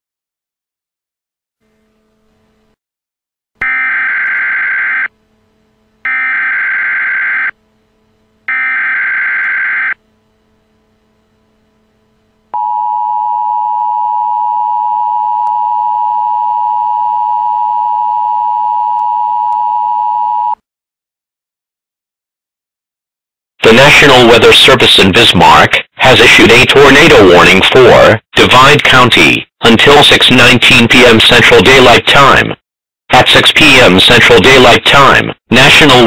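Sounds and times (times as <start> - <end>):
screeching digital data bursts: 6.1 - 7.5
two-tone attention signal: 12.6 - 20.6.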